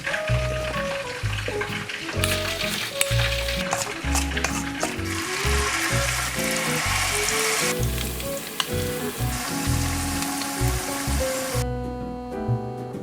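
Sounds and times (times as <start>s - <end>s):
background music with bass line: 0.0s - 13.0s
food sizzling in a pan: 2.2s - 3.7s, 4.6s - 11.6s.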